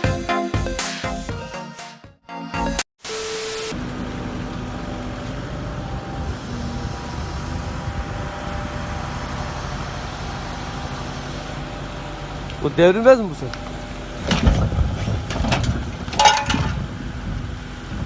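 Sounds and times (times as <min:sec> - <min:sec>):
diesel engine running: 0:03.7 - 0:18.0.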